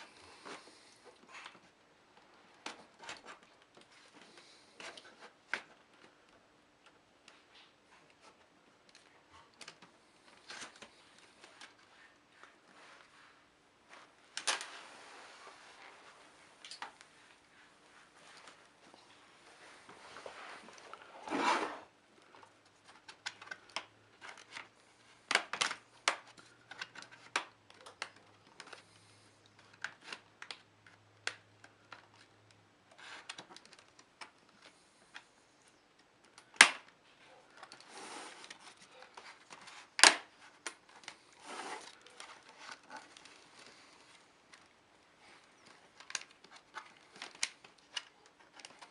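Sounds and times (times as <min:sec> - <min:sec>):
sharp plastic snaps: 0:25.3 - 0:32.6, 0:35.9 - 0:37.9, 0:38.6 - 0:41.2.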